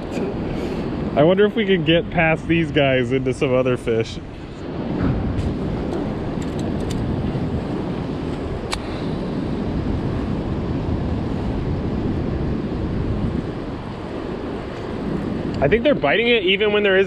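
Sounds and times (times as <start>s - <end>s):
wind buffeting microphone: 0.0s - 17.0s
sharp click: 8.3s - 9.0s.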